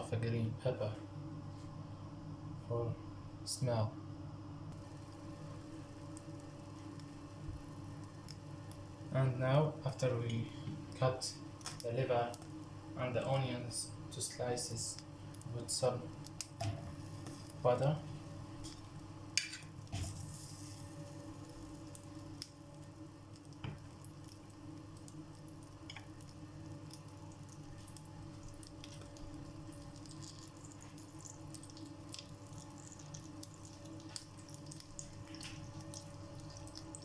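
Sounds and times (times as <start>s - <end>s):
low steady hum: 0.0s - 37.0s
butter sizzling in a pan: 4.8s - 9.7s, 14.8s - 37.0s.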